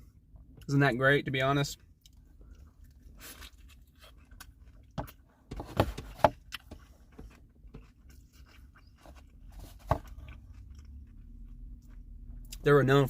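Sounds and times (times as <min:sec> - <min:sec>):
chewing food: 0:01.8 - 0:05.3, 0:06.4 - 0:12.6.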